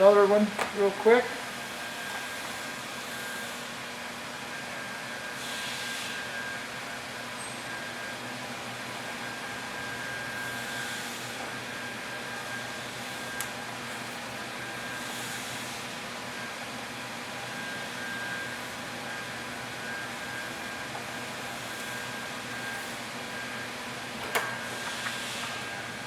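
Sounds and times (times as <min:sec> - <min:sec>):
mechanical hum: 0:00.0 - 0:26.0
thin steady whine: 0:00.0 - 0:26.0.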